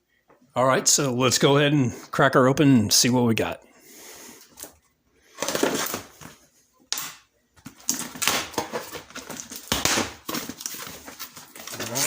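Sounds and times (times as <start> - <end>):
cardboard scraping and rustling: 5.4 - 6.4, 7.9 - 12.0
cardboard snapping: 7.8 - 12.0.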